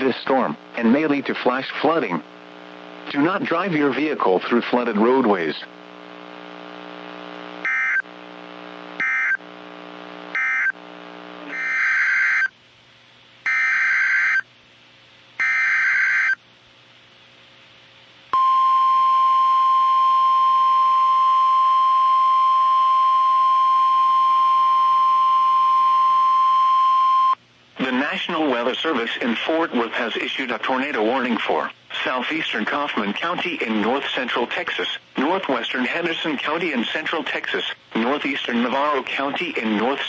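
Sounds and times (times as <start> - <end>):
steady loud alert tone: 11.5 - 12.5
warbling data bursts: 11.5 - 12.5.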